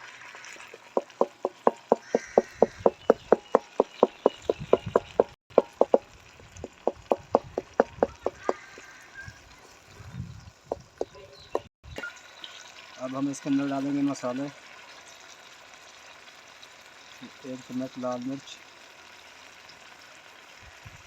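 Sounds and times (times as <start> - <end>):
utensil knocking against vessel: 0.7 - 8.6.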